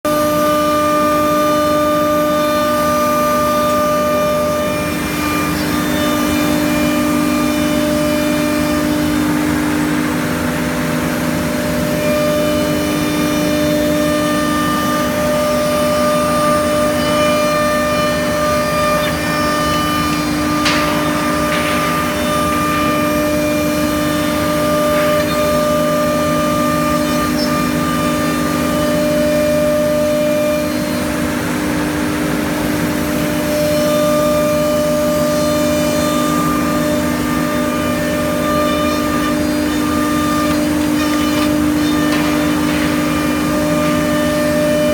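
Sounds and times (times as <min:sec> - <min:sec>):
router spindle whine: 0:00.1 - 0:44.9.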